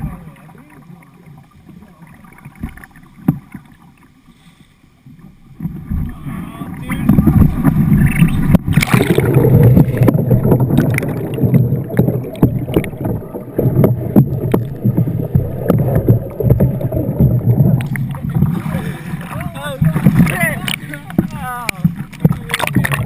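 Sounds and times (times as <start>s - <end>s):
water and paddle slapping boat: 0.0s - 23.0s
river water rushing and splashing: 6.1s - 23.0s.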